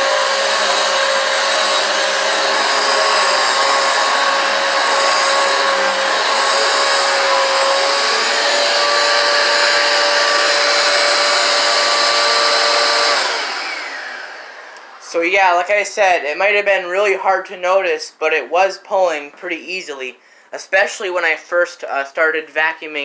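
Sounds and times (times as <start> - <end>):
vacuum motor spinning down: 0.0 - 15.0
upright vacuum cleaner running: 0.0 - 15.2.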